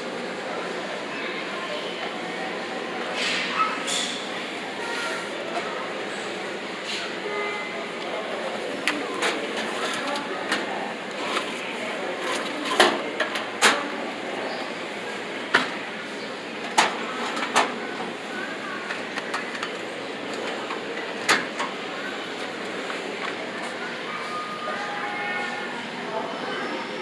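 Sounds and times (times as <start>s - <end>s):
background chatter: 0.0s - 27.0s
metal drawers clacking: 12.2s - 13.9s.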